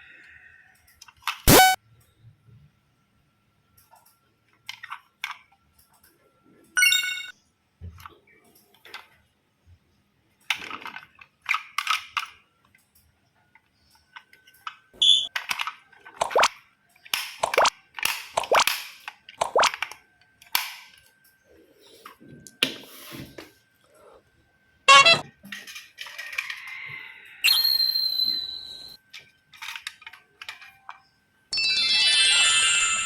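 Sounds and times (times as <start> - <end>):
plastic toys clicking and rattling: 0.8 - 1.6, 3.8 - 6.1, 8.0 - 9.3, 10.4 - 21.3, 24.9 - 26.9, 29.0 - 31.1
electronic toy beep: 1.5 - 1.8, 6.8 - 7.3, 15.0 - 15.3, 24.9 - 25.2, 27.4 - 29.0, 31.6 - 33.0.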